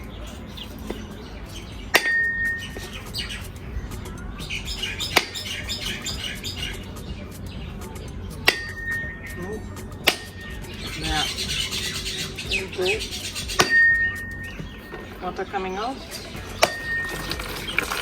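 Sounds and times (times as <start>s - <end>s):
birds chirping: 0.0s - 18.0s
metal blade cracking coconut: 1.9s - 2.9s, 5.1s - 5.5s, 8.4s - 9.0s, 10.0s - 10.4s, 13.6s - 14.0s, 16.6s - 17.8s.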